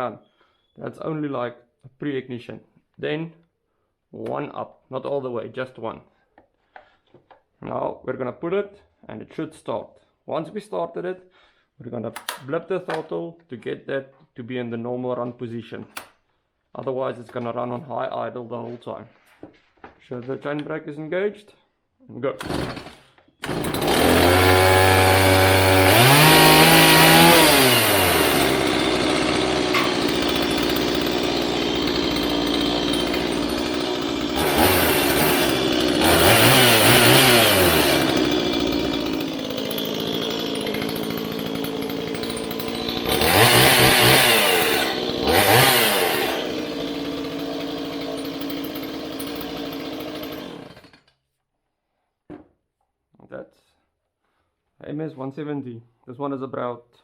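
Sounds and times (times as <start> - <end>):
chainsaw idling and revving: 22.4 - 51.1.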